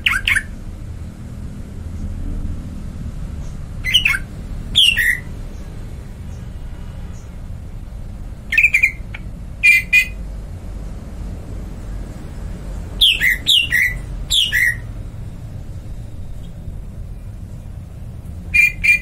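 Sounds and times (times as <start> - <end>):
bird squawking: 0.0 - 0.5, 3.8 - 5.3, 8.5 - 10.2, 13.0 - 14.9, 18.5 - 19.0
low hum: 0.0 - 19.0.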